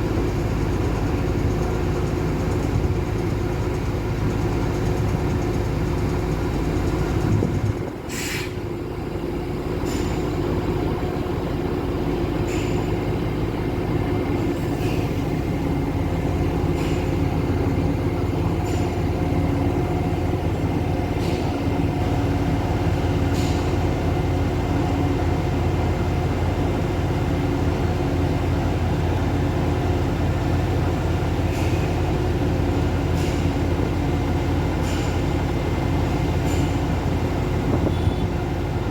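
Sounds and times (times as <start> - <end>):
diesel engine running: 0.0 - 38.9
air hissing: 8.1 - 8.6.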